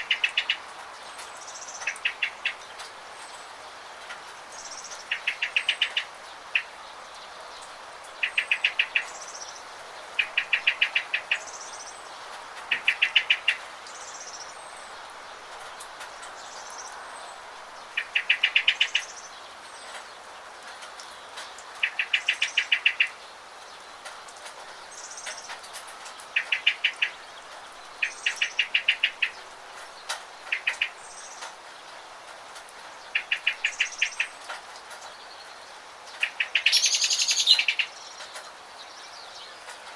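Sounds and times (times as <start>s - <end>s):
rain hissing: 0.0s - 39.9s
bird trilling: 36.2s - 38.0s
high bird chirps: 36.2s - 38.2s.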